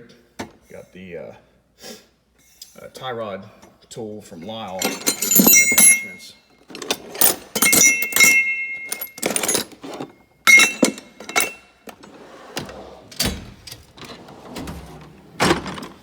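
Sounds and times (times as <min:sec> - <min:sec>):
metal hand tools clinking: 0:04.6 - 0:11.8.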